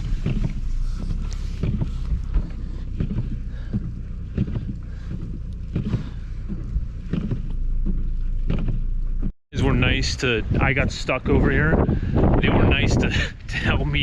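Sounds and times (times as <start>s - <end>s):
knocks and thumps: 0.0s - 9.4s
car engine running: 0.0s - 14.0s.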